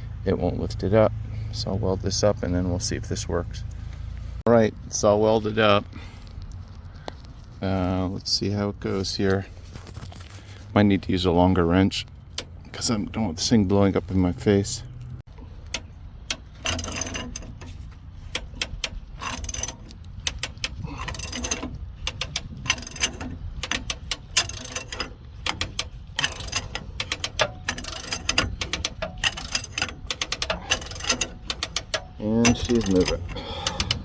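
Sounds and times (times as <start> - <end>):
ratchet wrench clicking: 15.3 - 34.0.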